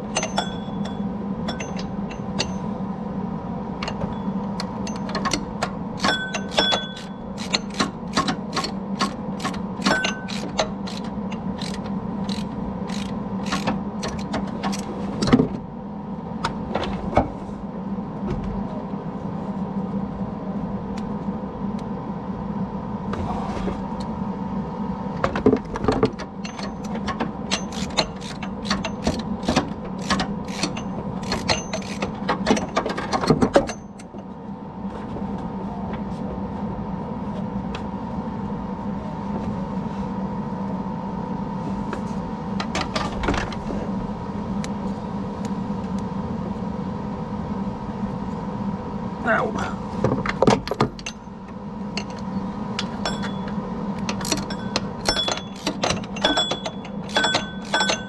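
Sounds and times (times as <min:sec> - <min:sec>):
steady hum: 0:00.0 - 0:58.0
hand ratchet clicking: 0:06.0 - 0:14.8, 0:27.5 - 0:32.2, 0:54.1 - 0:58.0.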